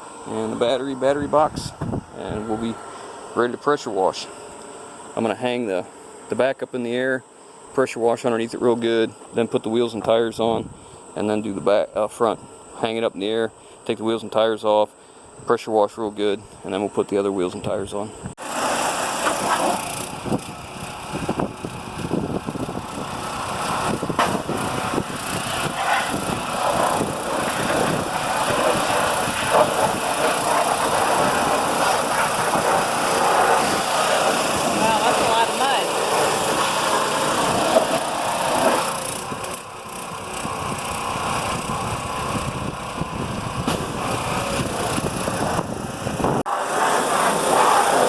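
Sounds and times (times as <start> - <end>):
water jet spraying: 18.4 - 42.4, 43.6 - 45.8, 46.5 - 48.0
pressure washer engine running: 18.4 - 48.0.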